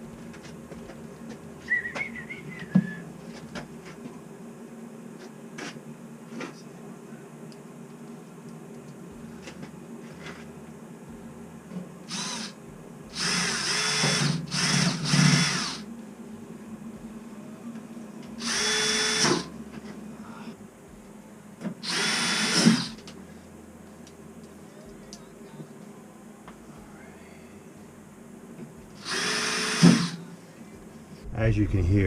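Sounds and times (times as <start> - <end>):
continuous low hum: 0.0 - 32.0
power drill running: 12.1 - 15.9, 18.4 - 19.5, 21.8 - 23.0, 29.0 - 30.2.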